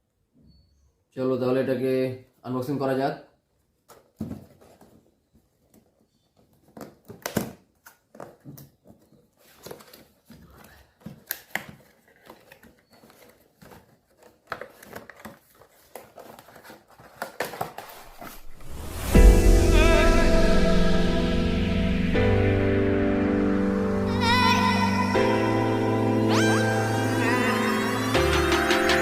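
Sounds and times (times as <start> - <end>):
packaging rustling and crinkling: 3.8 - 18.6.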